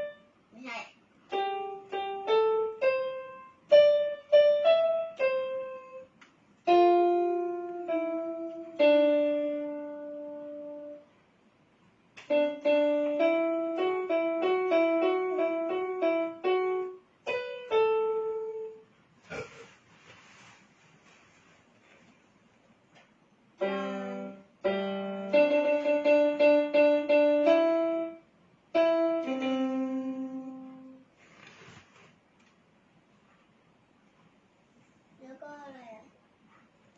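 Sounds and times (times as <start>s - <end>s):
piano melody: 0.0s - 0.4s, 1.2s - 11.1s, 12.2s - 18.9s, 23.6s - 31.1s.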